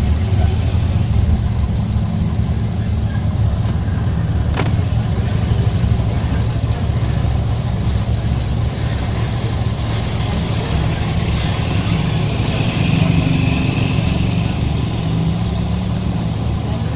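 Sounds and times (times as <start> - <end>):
engine rumbling steadily: 0.0 - 16.9.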